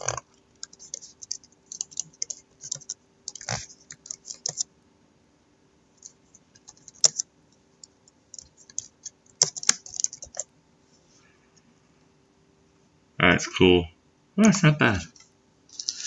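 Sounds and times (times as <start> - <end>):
typing on computer keyboard: 0.0 - 4.7, 6.0 - 10.5
faint steady hum: 0.0 - 16.0.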